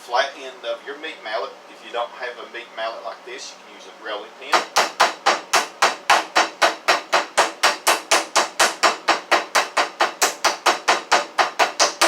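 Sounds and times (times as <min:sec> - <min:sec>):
meat mallet pounding chicken: 0:04.5 - 0:12.0.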